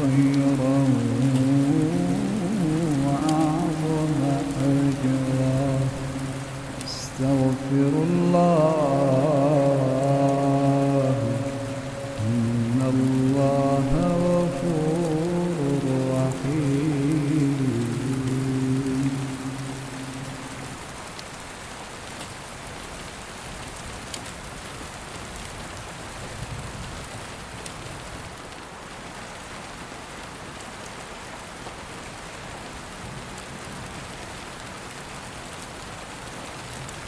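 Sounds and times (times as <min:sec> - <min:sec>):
raindrop ticks: 0:00.0 - 0:29.0
steady rain: 0:00.0 - 0:37.0.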